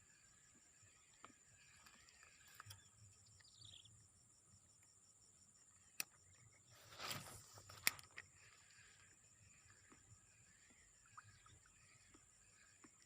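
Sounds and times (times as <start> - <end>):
crickets trilling: 0.0 - 13.0
short rustle: 6.8 - 7.9.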